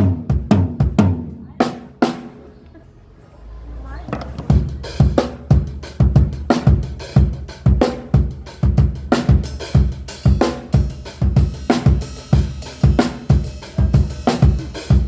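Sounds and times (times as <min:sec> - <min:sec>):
bass drum: 0:04.1 - 0:15.0.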